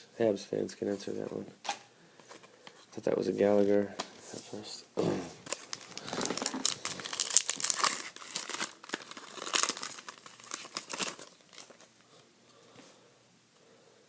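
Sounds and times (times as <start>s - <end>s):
wrapper tearing and crinkling: 5.4s - 12.0s.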